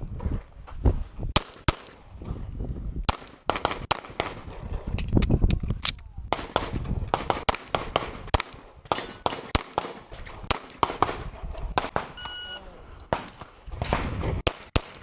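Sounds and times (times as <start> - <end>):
handgun shots: 6.4 - 11.2
electronic beep: 12.2 - 12.7.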